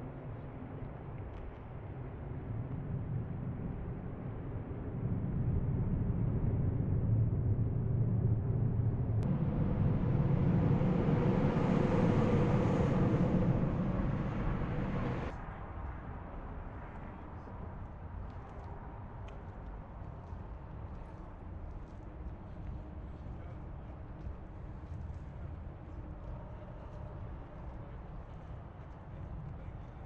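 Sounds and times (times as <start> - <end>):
car road and engine rumble: 7.2 - 15.4.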